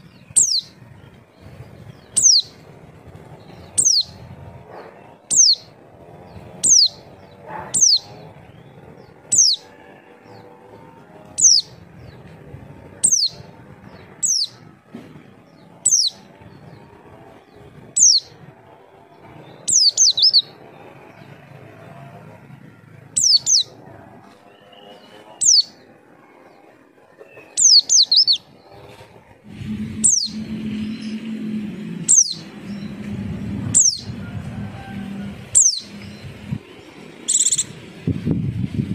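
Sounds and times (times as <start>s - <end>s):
low hum: 28.6s - 38.9s
bird calling sharp high notes: 29.5s - 33.1s.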